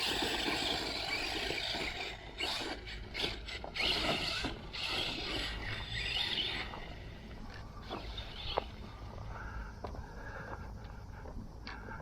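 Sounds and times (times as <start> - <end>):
toy car motor whining: 0.0 - 7.2, 7.8 - 8.8.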